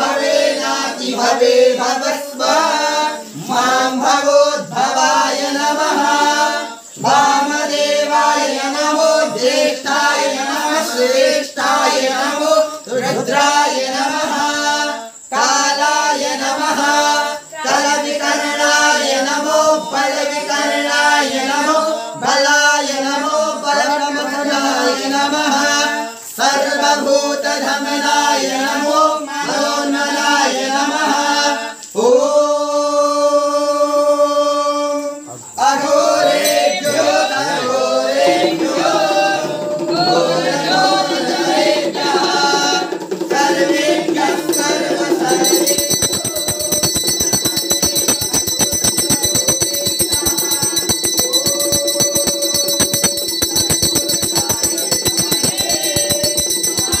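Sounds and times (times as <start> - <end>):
group chanting: 0.0 - 57.0
bell ringing rapidly: 36.3 - 42.7, 43.4 - 57.0.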